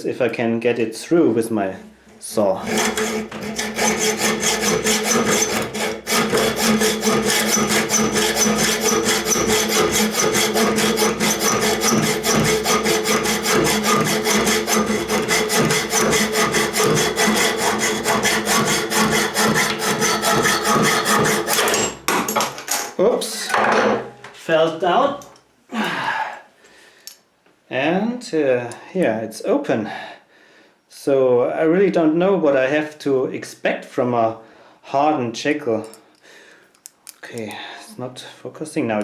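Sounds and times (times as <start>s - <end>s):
hacksaw cutting metal: 2.4s - 22.3s.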